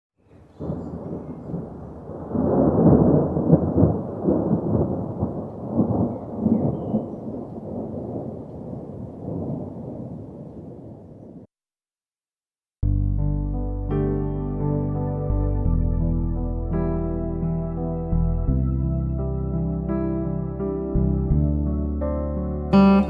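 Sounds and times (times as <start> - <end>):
rain: 0.2 - 11.5
rolling thunder: 0.4 - 11.5.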